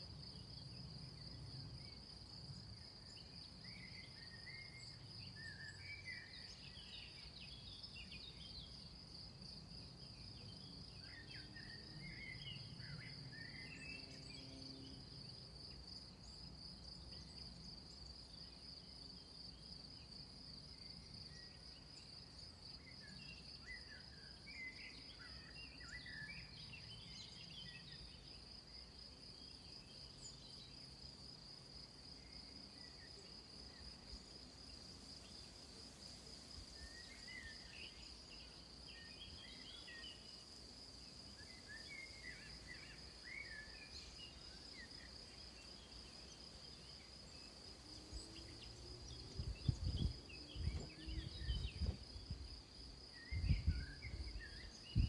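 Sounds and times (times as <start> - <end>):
insects trilling: 21.1 - 55.0
small birds chirping: 41.1 - 55.0.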